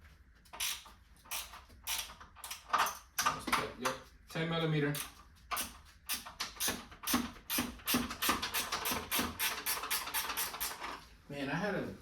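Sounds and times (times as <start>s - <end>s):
ratchet wrench clicking: 0.6s - 3.1s, 5.0s - 10.8s.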